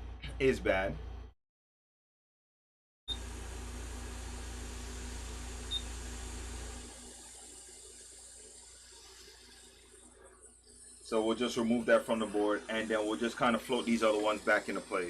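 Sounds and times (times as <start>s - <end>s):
electrical hum with fan hiss: 3.1s - 15.0s.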